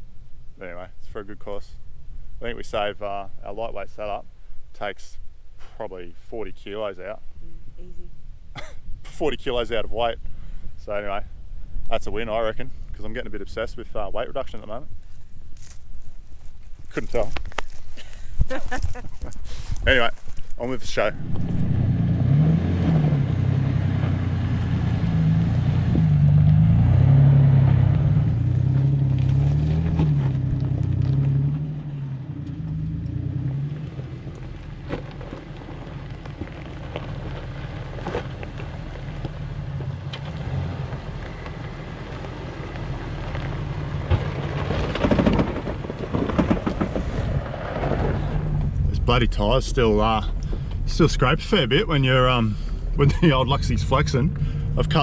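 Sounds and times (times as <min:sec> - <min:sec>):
vehicle engine revving: 0:20.6 - 0:55.0.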